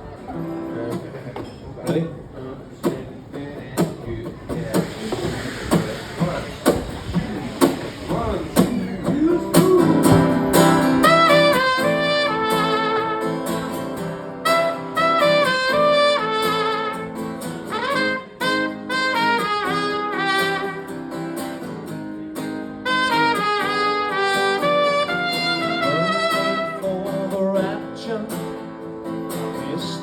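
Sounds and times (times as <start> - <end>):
strummed guitar: 0.0 - 30.0
trumpet playing quick melody: 10.9 - 21.0, 22.8 - 26.9.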